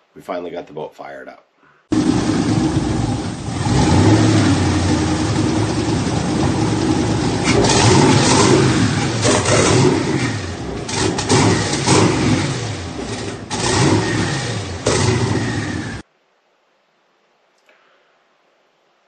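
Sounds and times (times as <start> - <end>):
boat engine running and revving: 2.0 - 16.0.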